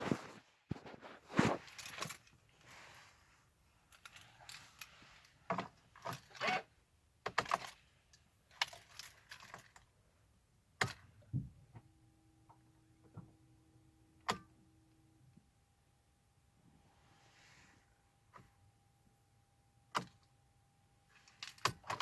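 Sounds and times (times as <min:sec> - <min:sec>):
handling clicks and rattles: 0:00.0 - 0:02.5, 0:07.2 - 0:09.9.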